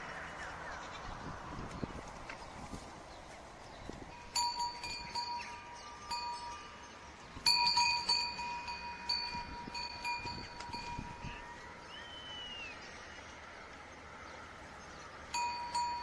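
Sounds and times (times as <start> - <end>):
sheep bells clanking: 4.1 - 11.4, 15.3 - 16.0.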